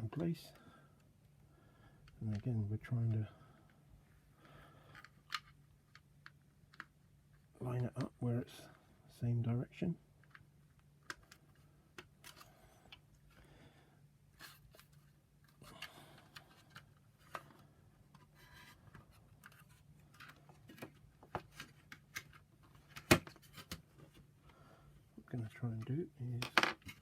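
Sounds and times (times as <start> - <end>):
plastic parts clicking and scraping: 4.8 - 8.1, 14.3 - 24.2, 25.4 - 27.0.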